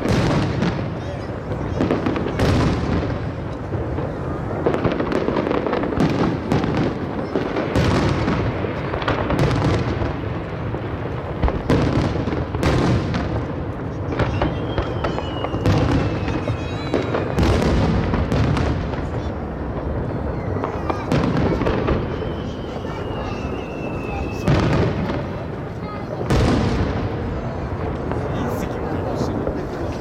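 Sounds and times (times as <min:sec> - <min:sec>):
fireworks booming and crackling: 0:00.0 - 0:30.0
high whistling tone sliding down: 0:22.1 - 0:24.5.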